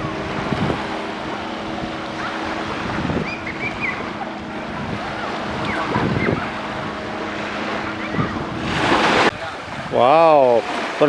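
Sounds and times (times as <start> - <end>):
steady low hum: 0.0 - 10.0
waves washing onto a beach: 0.0 - 11.0
wind buffeting microphone: 0.0 - 11.0
faint distant voices: 1.1 - 10.5.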